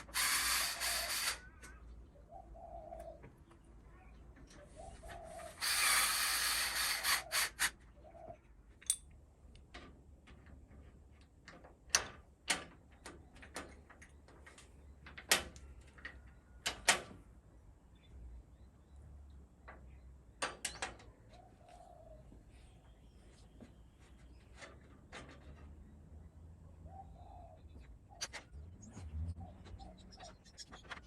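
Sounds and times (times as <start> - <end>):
ratcheting rattle: 5.6 - 7.7
sharp metal clicks and knocks: 8.8 - 17.2, 19.6 - 21.1.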